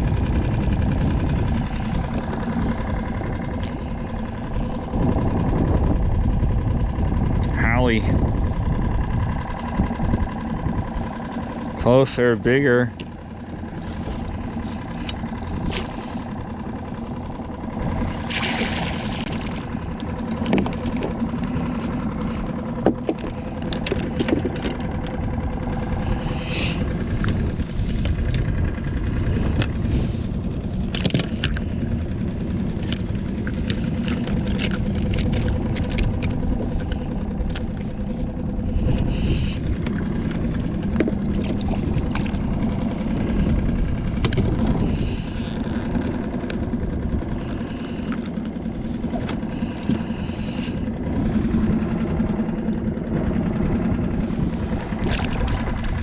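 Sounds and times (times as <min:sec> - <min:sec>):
boat motor idling: 0:00.0 - 0:56.0.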